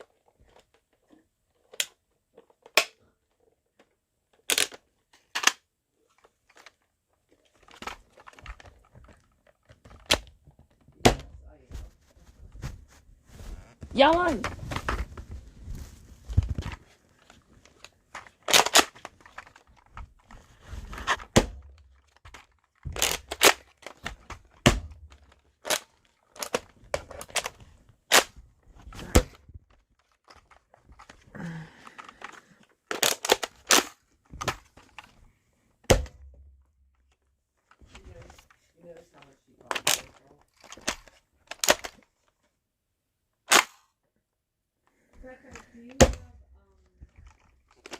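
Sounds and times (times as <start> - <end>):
plastic toy blaster clacks: 4.4 - 5.6, 18.2 - 19.9, 22.2 - 24.3, 31.9 - 35.0, 43.5 - 43.9.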